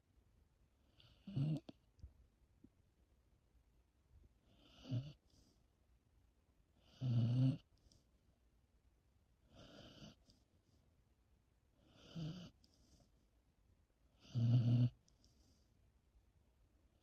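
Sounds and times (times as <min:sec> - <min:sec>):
rasping snores: 0:01.0 - 0:01.7, 0:04.5 - 0:05.2, 0:06.9 - 0:07.6, 0:09.6 - 0:10.2, 0:11.9 - 0:12.6, 0:14.2 - 0:15.0.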